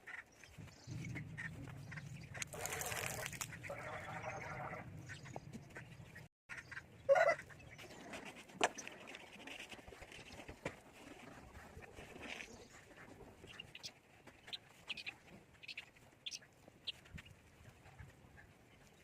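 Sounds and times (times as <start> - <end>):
ducks quacking: 1.4 - 7.6.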